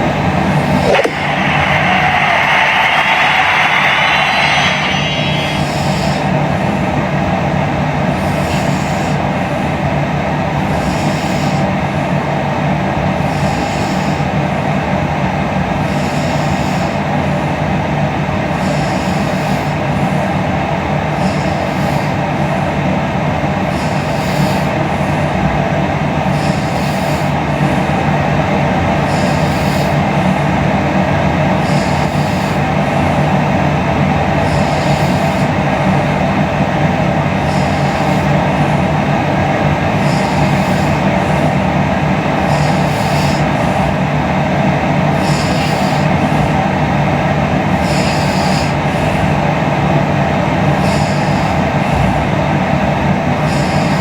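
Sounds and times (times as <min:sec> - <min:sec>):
hissing breath: 0:00.0 - 0:54.0
steady rushing noise: 0:00.0 - 0:54.0
woman snoring: 0:13.1 - 0:14.4, 0:15.8 - 0:17.6, 0:18.4 - 0:20.4, 0:23.6 - 0:25.5, 0:26.2 - 0:54.0.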